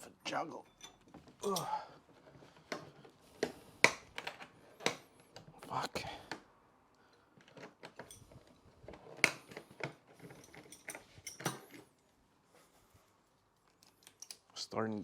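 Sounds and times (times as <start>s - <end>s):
hand tools clinking on metal: 0.5s - 2.0s, 8.0s - 8.5s, 9.2s - 12.0s.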